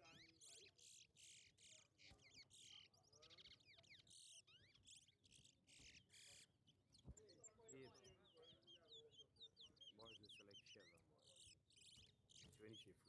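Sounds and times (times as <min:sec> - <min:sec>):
finch singing whistled notes: 0:06.9 - 0:13.0.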